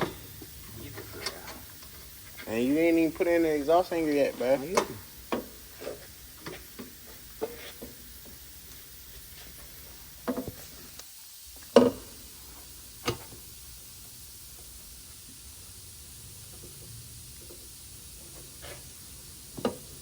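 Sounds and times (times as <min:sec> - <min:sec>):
exhaust pipe metallic knocks: 0:00.0 - 0:02.1.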